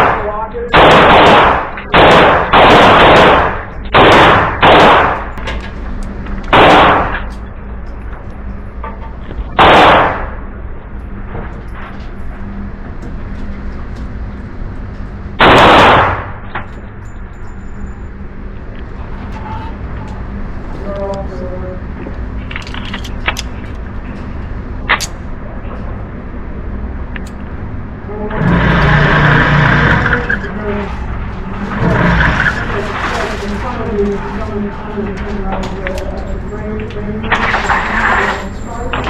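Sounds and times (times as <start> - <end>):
loud pistol shots: 0.0 - 5.3, 6.5 - 7.3, 9.6 - 10.4, 15.4 - 16.4.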